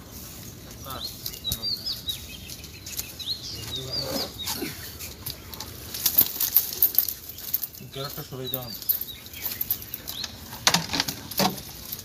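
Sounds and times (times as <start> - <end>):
birds chirping: 0.0 - 12.0.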